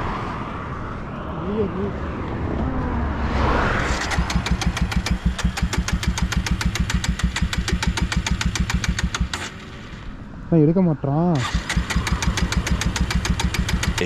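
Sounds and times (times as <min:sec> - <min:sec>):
motorcycle engine running: 0:04.0 - 0:10.0, 0:11.4 - 0:14.0.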